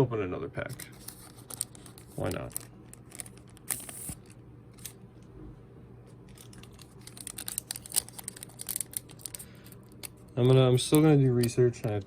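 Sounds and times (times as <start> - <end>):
card pack wrapper crinkling and tearing: 0.7 - 5.0, 6.3 - 10.6.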